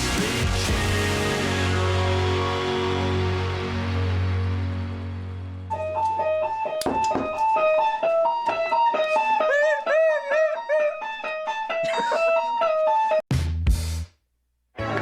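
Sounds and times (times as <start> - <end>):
plucked guitar notes: 5.7 - 13.2, 14.8 - 15.0.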